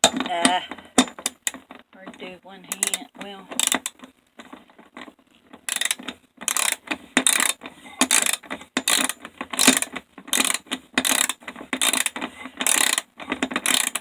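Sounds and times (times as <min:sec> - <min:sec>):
ratchet wrench clicking: 0:03.6 - 0:03.9, 0:05.7 - 0:14.0.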